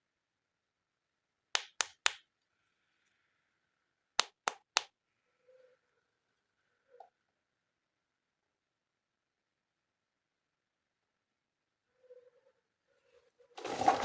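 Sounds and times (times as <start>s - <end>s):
sharp taps: 1.6s - 2.2s, 4.2s - 4.9s.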